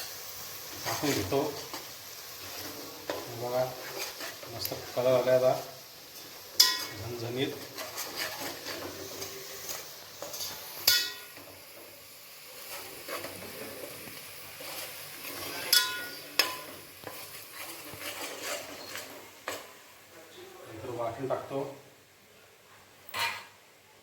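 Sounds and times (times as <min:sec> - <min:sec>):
food sizzling in oil: 0:00.0 - 0:20.1
metal spoon clinking against pot: 0:06.6 - 0:07.0, 0:10.8 - 0:11.4, 0:15.5 - 0:16.7.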